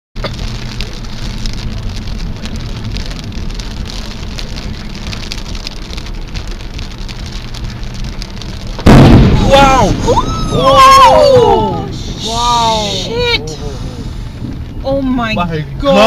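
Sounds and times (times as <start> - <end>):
heavy rain on car roof: 0.2 - 16.0
low engine hum: 0.2 - 16.0.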